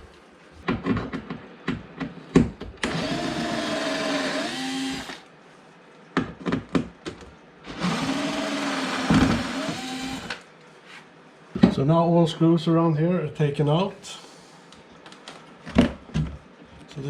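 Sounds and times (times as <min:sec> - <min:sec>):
electric screwdriver whining: 0:02.9 - 0:05.2, 0:07.8 - 0:10.4.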